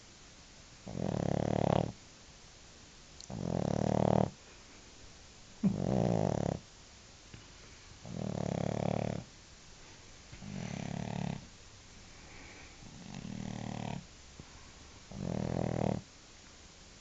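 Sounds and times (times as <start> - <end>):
dog snoring: 0.8 - 2.0, 3.2 - 4.4, 5.6 - 6.7, 8.0 - 9.3, 10.4 - 11.5, 12.8 - 14.1, 15.1 - 16.1.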